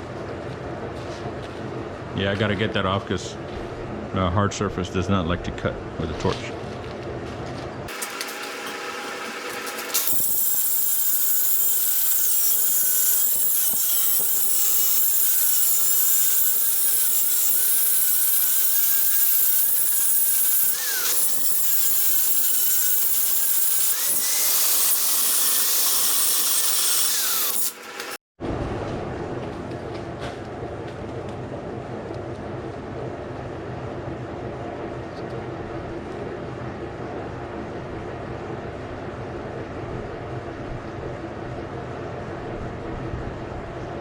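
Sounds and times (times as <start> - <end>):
grinder grinding metal: 7.9 - 28.2.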